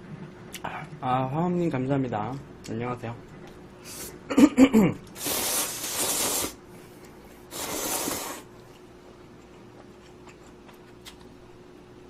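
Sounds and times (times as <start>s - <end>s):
person slurping noodles: 5.2s - 6.6s, 7.5s - 8.5s.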